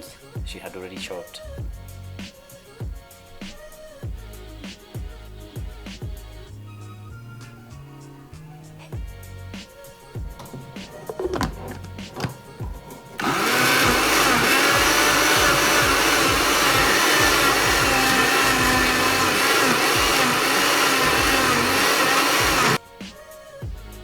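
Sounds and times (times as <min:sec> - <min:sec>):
electric blender running: 0:10.4 - 0:22.8.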